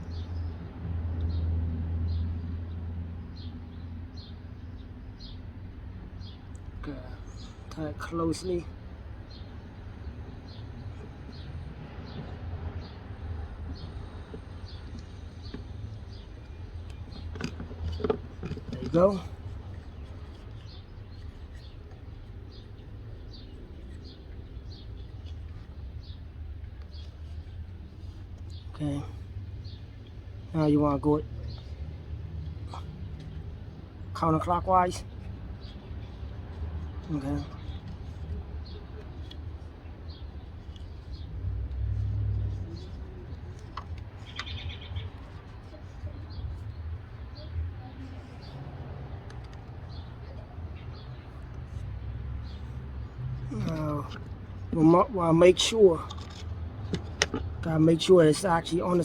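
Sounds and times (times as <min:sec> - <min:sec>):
bird chirping: 0:13.7 - 0:41.3, 0:42.4 - 0:56.4
small bird chirping: 0:42.4 - 0:56.2.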